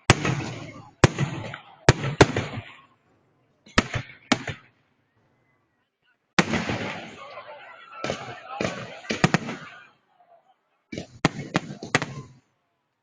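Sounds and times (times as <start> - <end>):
fireworks bursting with echo: 0.0 - 3.0, 3.7 - 4.8, 6.4 - 10.0, 10.9 - 12.5.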